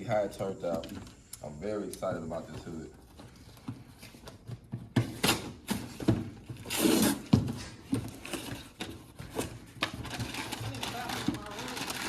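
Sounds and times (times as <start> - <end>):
packaging rustling and scraping: 2.4 - 12.0.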